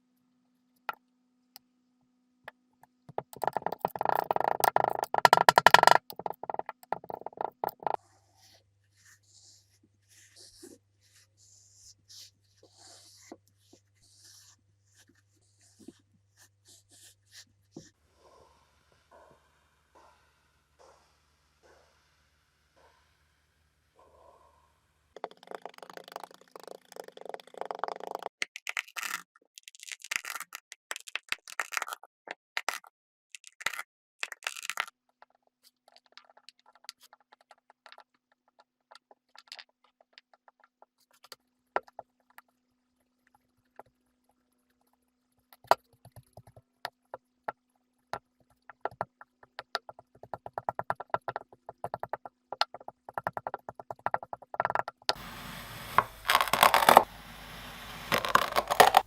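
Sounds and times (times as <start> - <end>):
steady hiss: 55.2 - 59.0.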